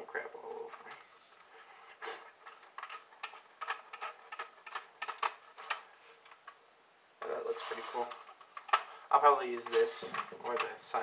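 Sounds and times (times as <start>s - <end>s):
handling clicks taps and rustles: 2.2s - 6.6s, 7.2s - 11.0s.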